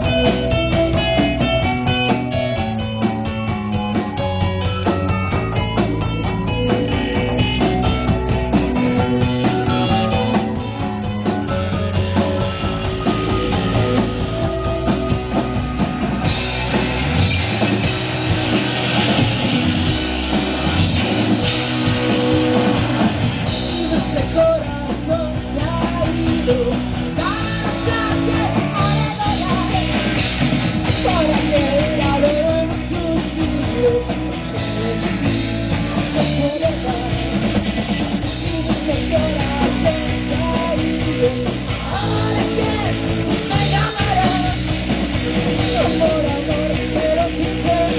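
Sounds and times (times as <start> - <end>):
drum kit: 0.0 - 47.9
electric guitar: 0.0 - 47.9
person singing: 22.0 - 30.2, 30.9 - 37.5, 38.2 - 47.9.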